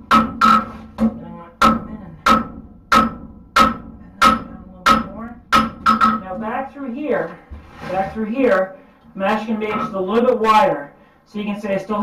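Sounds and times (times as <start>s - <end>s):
hammer blows on anvil: 0.0s - 6.8s.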